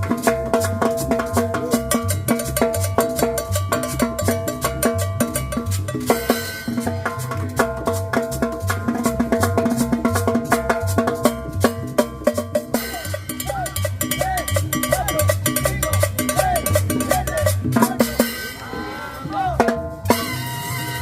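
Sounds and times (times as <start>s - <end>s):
cowbell and percussion beat: 0.0s - 21.0s
repeating bass line: 1.0s - 21.0s
wavering melodic line: 12.4s - 19.0s.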